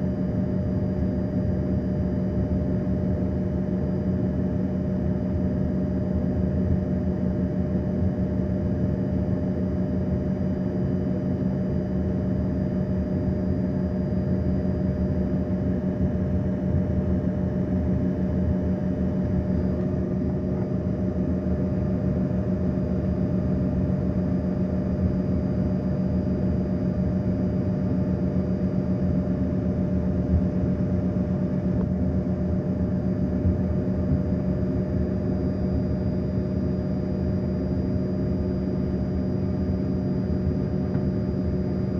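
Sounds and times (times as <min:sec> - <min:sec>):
airliner engine drone: 0:00.0 - 0:41.9.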